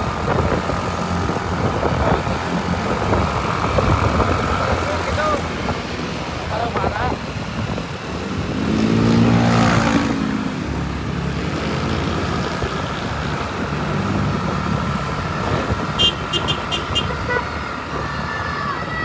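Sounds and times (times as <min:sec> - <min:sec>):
traffic noise: 0:00.0 - 0:19.0
vehicle passing: 0:00.0 - 0:19.0.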